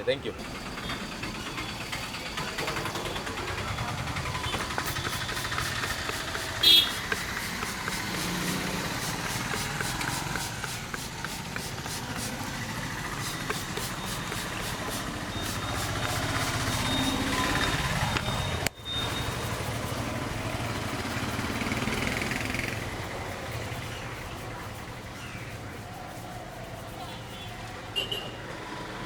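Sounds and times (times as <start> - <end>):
street traffic: 0.0 - 29.0.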